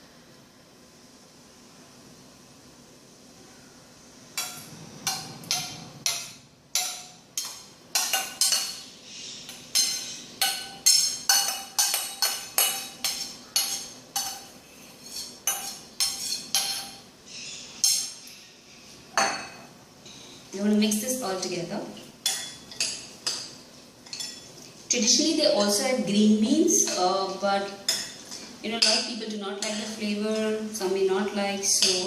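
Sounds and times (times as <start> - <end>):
utensil clinking against dish: 4.4 - 8.9, 9.5 - 17.0.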